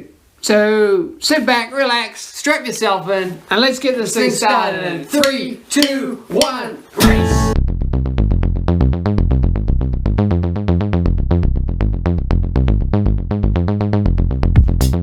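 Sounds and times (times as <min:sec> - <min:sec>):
electronic dance music: 0:07.0 - 0:07.6.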